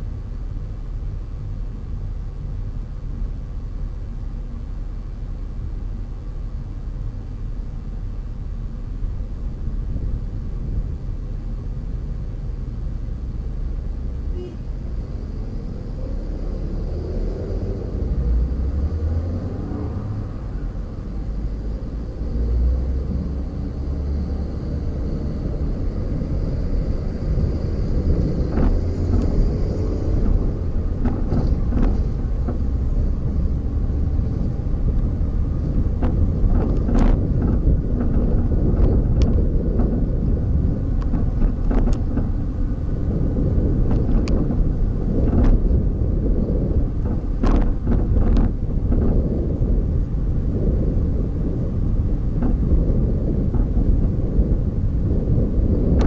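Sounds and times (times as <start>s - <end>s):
car driving rumble: 0.0s - 56.0s.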